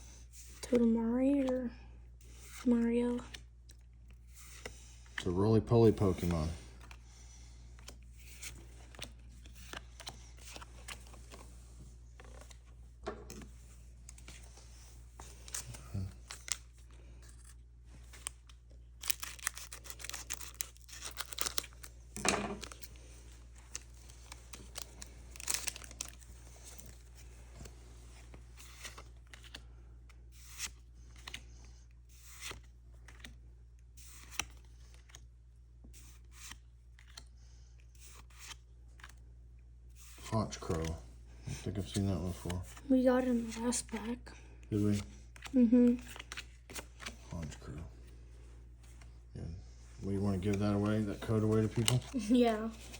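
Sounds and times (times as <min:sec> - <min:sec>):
foil wrappers tearing and crinkling: 0:19.0 - 0:23.0, 0:23.7 - 0:26.2.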